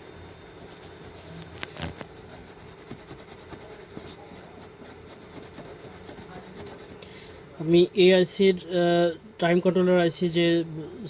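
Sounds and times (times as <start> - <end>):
soldering rubbing and scraping: 0.0 - 7.0.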